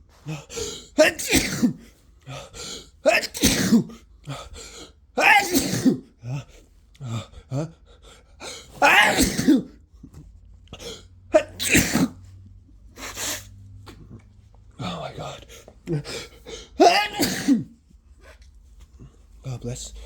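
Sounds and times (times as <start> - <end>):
person sneezing: 0.3 - 2.0, 3.0 - 4.0, 5.2 - 6.1, 8.6 - 9.8, 10.8 - 12.2, 16.0 - 17.8.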